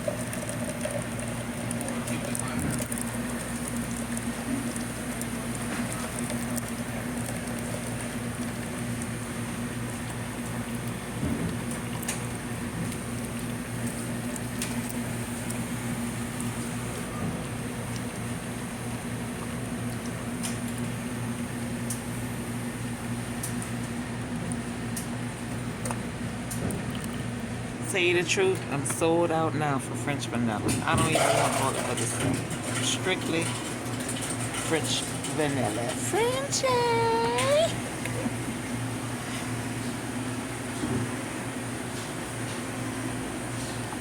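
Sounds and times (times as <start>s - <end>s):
liquid pouring into cup: 0.0s - 9.2s
coffee machine humming: 0.0s - 44.0s.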